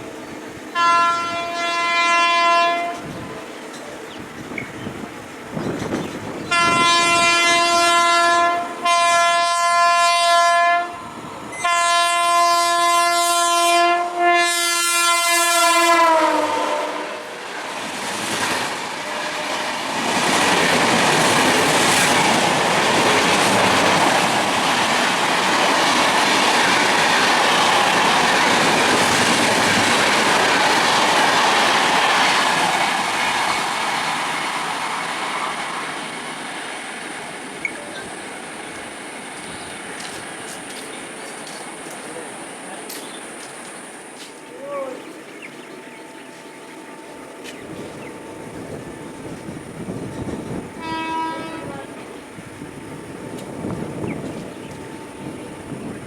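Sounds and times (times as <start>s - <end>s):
train roar and wheel clatter: 0.0s - 56.0s
locomotive horn blasts: 0.8s - 3.2s, 6.5s - 17.4s, 50.8s - 51.9s.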